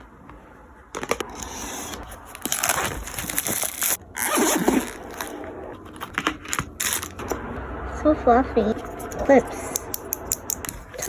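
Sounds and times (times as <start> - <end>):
packaging rustling: 1.0 - 7.2.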